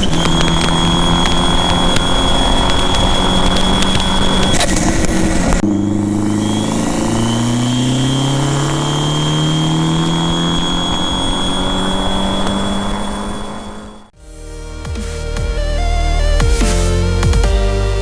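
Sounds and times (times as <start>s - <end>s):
car engine at full throttle: 0.0s - 14.2s.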